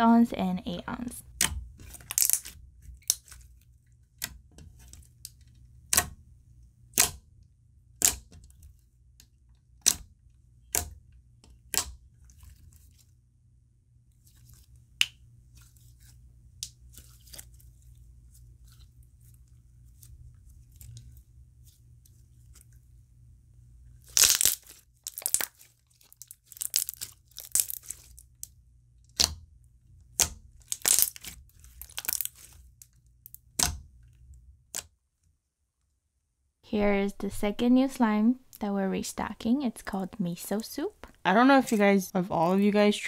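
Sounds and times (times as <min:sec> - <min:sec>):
slime squishing and popping: 0:01.3 - 0:03.4, 0:06.9 - 0:07.2, 0:24.0 - 0:28.4, 0:30.0 - 0:33.8.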